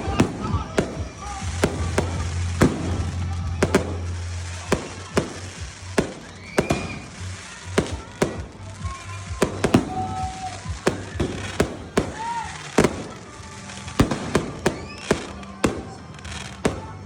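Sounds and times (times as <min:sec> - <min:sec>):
fireworks bangs: 0:00.0 - 0:17.0
fireworks whistles: 0:00.0 - 0:17.0.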